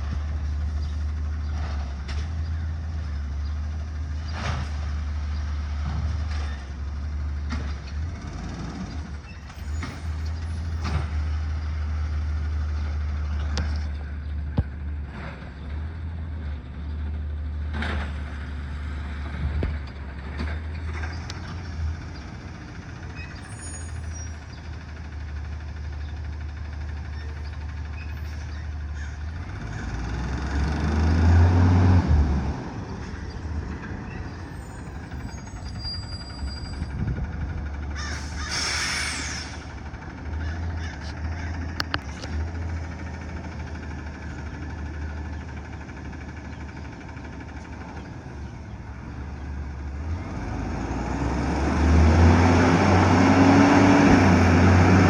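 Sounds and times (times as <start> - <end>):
truck diesel engine running: 0.0 - 55.0
air brake hiss: 38.1 - 39.7.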